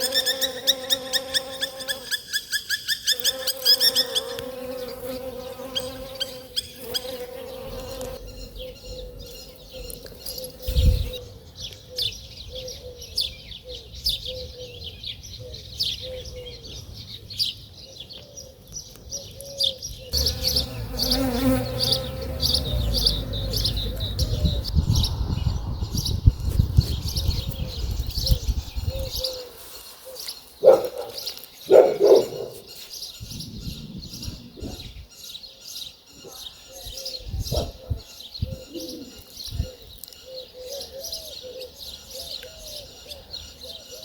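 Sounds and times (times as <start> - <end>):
bee buzzing: 0.0 - 2.1, 3.2 - 8.2, 20.2 - 25.1
small birds chirping: 0.0 - 44.0
low rumble: 22.2 - 29.0, 33.2 - 35.0.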